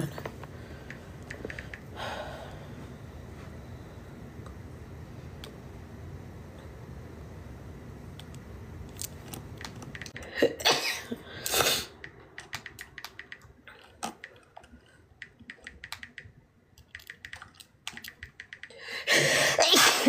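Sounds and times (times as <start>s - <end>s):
woman sneezing: 19.3s - 20.0s.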